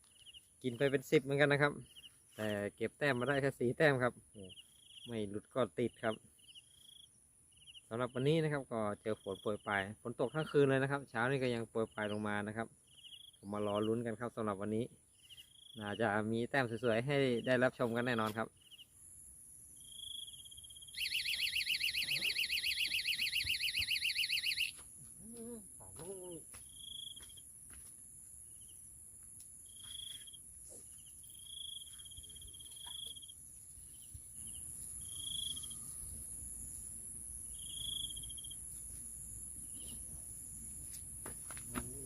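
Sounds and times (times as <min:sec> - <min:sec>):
insect pulsing trill: 0:15.2 - 0:27.5, 0:28.2 - 0:42.0
short high insect chirps: 0:17.5 - 0:24.8, 0:26.6 - 0:27.5, 0:29.4 - 0:41.2
insect high whine: 0:18.7 - 0:25.6, 0:29.6 - 0:42.0.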